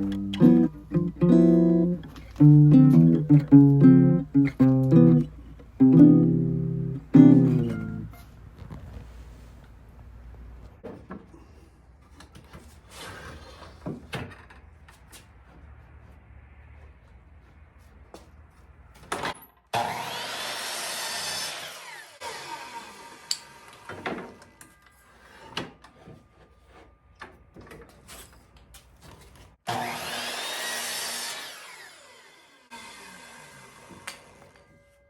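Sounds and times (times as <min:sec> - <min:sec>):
power saw cutting wood: 0:19.8 - 0:24.0, 0:29.7 - 0:34.8.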